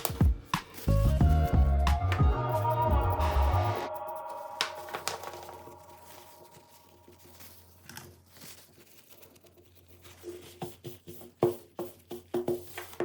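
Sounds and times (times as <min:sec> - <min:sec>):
background music: 0:00.0 - 0:07.2
light crinkling: 0:04.4 - 0:10.8.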